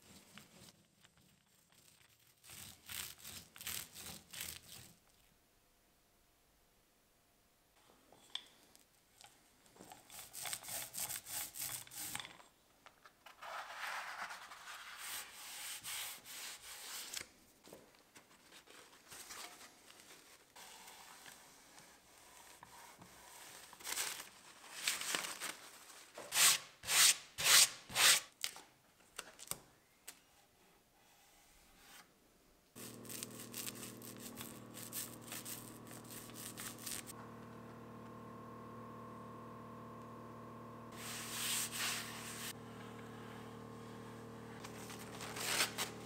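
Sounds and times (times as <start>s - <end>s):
sandpaper rubbing on wood: 1.5s - 4.9s, 10.2s - 12.2s, 14.8s - 17.1s, 26.3s - 28.2s, 32.8s - 37.1s, 41.0s - 42.6s.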